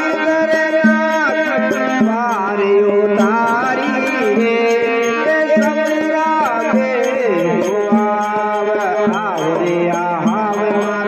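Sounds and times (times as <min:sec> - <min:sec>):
hand drum strokes: 0:00.0 - 0:11.0
steady drone: 0:02.9 - 0:06.5.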